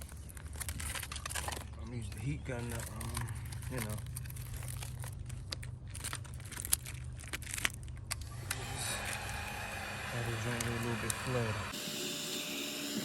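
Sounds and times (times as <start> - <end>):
plastic film crinkling: 0.0 - 9.4
heat gun blowing hiss: 8.3 - 13.0.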